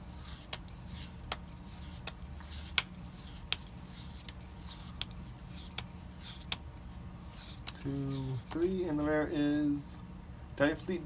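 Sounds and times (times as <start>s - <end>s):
low steady hum: 0.0s - 11.0s
cards sliding over one another: 0.1s - 8.8s
sharp card snaps: 0.3s - 6.8s, 7.4s - 8.8s.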